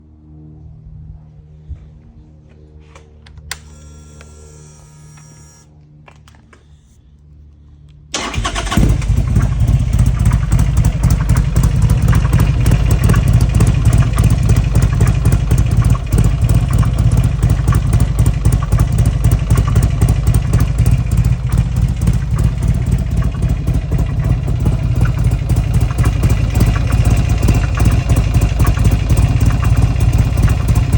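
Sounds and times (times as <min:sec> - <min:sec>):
motorcycle engine running: 0:08.2 - 0:30.9
rapid engine ticking: 0:08.2 - 0:30.9.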